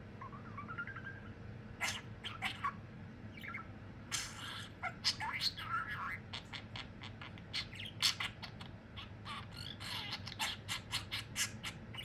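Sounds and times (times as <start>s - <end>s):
budgerigar chattering: 0.2s - 12.0s.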